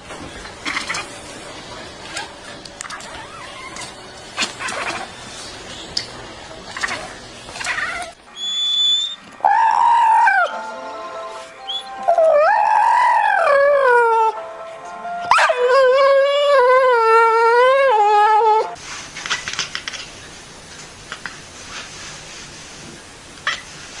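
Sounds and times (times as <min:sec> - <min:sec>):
dog howling: 0:07.6 - 0:10.6, 0:12.0 - 0:14.4, 0:15.3 - 0:18.8.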